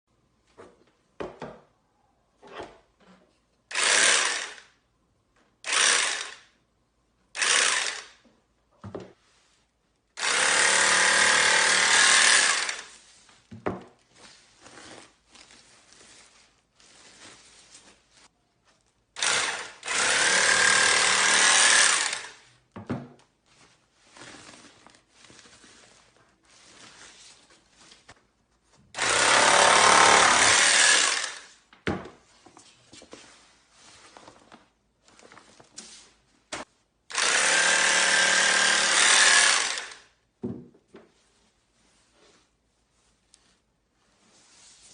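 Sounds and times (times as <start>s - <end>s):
bag-closer sewing machine running: 29.0s - 31.4s.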